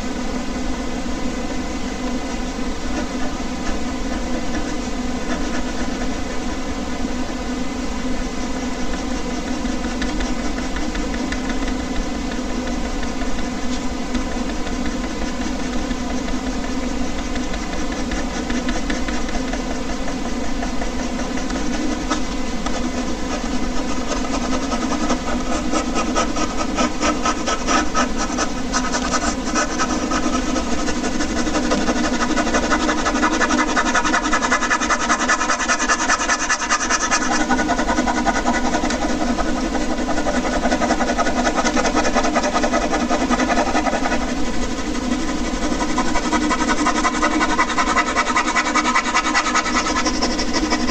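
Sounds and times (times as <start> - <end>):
air conditioner humming: 0.0 - 50.9
pen scratching on paper: 2.8 - 7.5, 8.4 - 50.9.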